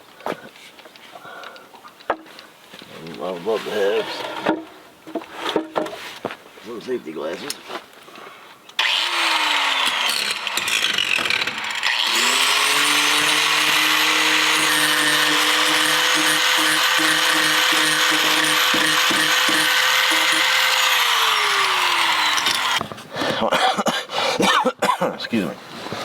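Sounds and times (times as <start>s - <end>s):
angle grinder whine: 8.8s - 22.8s.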